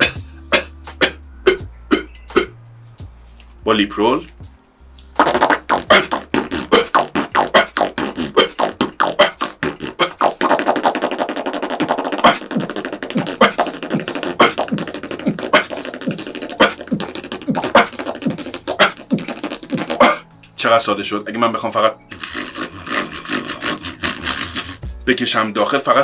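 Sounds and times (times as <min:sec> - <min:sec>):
beatboxing cough snare: 0:00.0 - 0:02.6, 0:05.2 - 0:20.3, 0:22.1 - 0:24.8
beatboxing lip roll: 0:00.0 - 0:02.6, 0:05.0 - 0:20.3, 0:22.1 - 0:24.8.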